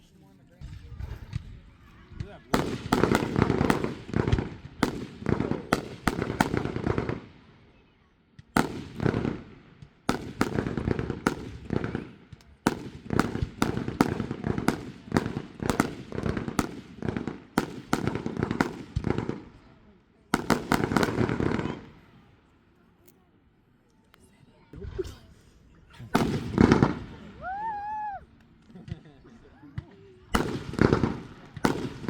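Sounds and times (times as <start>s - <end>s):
fireworks bangs with rumbling echoes: 0.6s - 7.6s, 8.3s - 19.7s, 20.3s - 22.3s, 26.1s - 27.6s, 29.7s - 32.0s.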